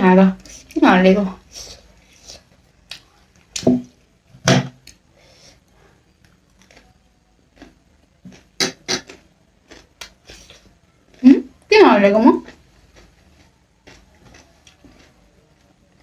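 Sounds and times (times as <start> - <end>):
chewing and slurping noodles: 12.5 - 15.3.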